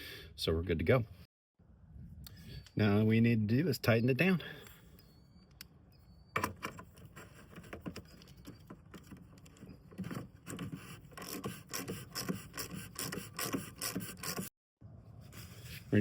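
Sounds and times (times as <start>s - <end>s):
cap threads rubbing and scraping: 6.8s - 14.5s.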